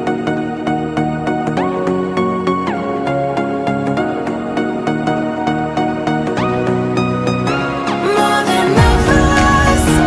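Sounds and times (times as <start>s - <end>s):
electronic pop music: 0.0s - 10.0s
deep bass: 8.8s - 10.0s.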